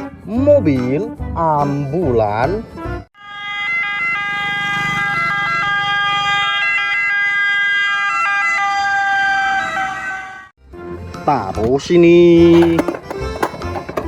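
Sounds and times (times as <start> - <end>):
two-tone ambulance siren: 3.2 - 10.6.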